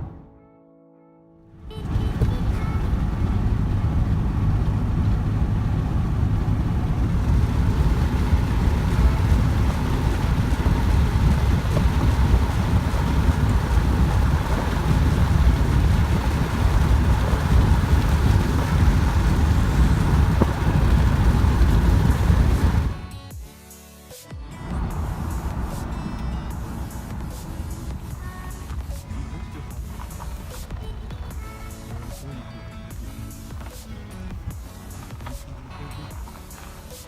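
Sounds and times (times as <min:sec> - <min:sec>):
vehicle engine rumbling: 0:01.6 - 0:23.2, 0:24.5 - 0:37.0.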